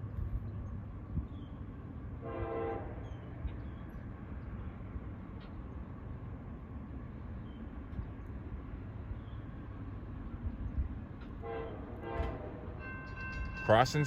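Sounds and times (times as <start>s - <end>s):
low train rumble: 0.0s - 14.0s
distant train horn blast: 2.2s - 3.3s, 11.4s - 13.0s.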